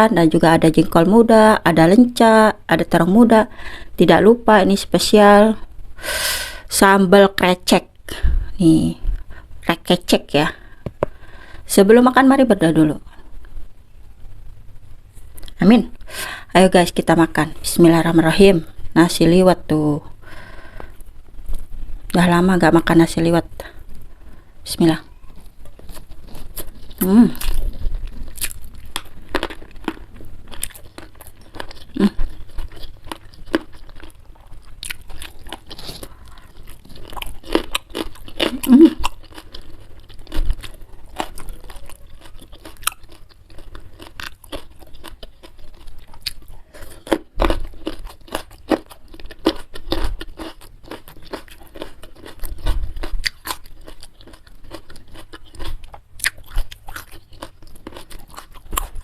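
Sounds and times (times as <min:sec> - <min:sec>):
chewing and crunching food: 0:25.1 - 0:59.0.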